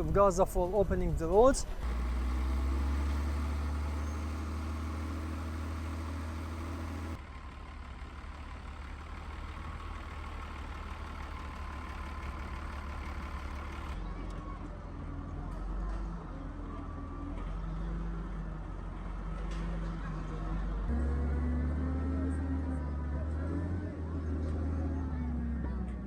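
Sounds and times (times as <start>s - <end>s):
heavy machinery engines rumbling: 0.0s - 26.0s.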